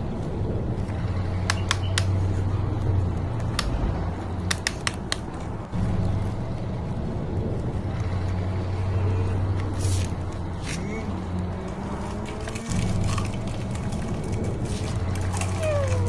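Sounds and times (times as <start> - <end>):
sharp plastic clicks: 1.4 - 2.2, 3.4 - 5.6.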